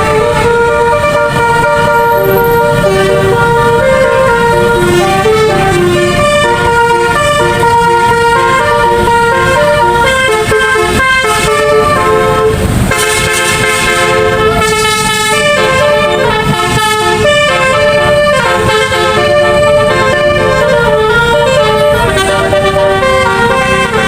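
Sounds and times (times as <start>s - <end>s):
air horn playing a tune: 0.0s - 24.0s.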